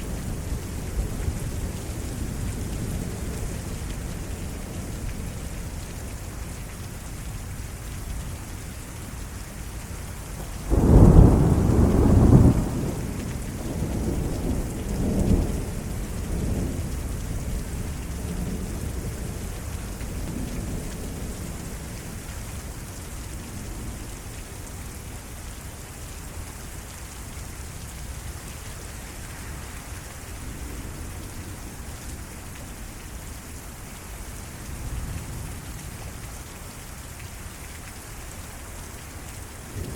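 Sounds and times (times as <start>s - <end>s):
heavy rain: 0.0s - 39.9s
thunder clap and rumble: 10.6s - 19.5s.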